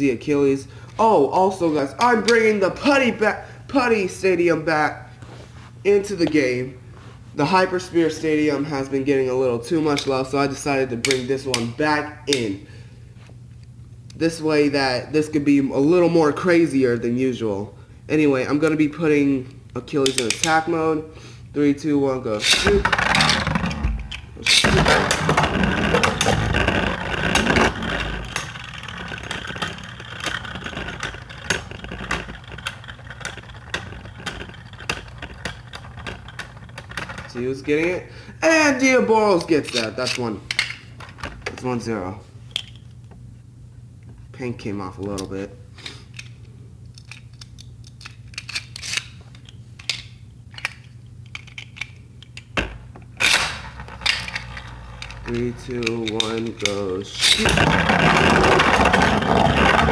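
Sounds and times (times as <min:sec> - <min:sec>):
steady low hum: 0:00.0 - 0:59.9
rustling scrape: 0:05.1 - 0:05.9, 0:06.9 - 0:07.4, 0:53.7 - 0:59.9
spinning tops whirring: 0:22.4 - 0:37.4, 0:53.2 - 0:59.9.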